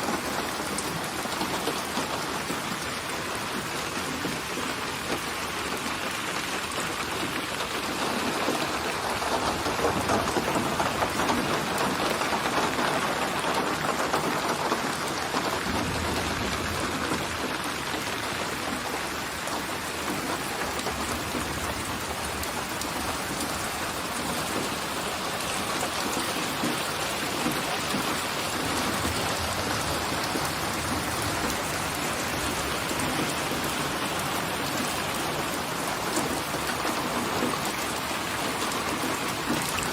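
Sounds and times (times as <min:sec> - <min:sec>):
heavy rain falling: 0:00.0 - 0:39.9
distant thunder rumble: 0:13.6 - 0:35.5.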